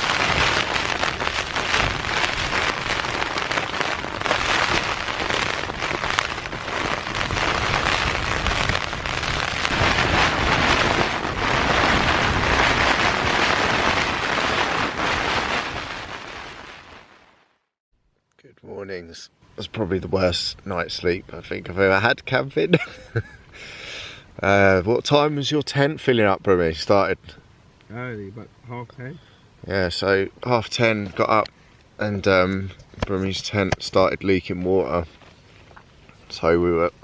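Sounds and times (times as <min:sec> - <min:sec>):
heavy rain on tent fabric: 0:00.0 - 0:17.7, 0:22.8 - 0:24.1.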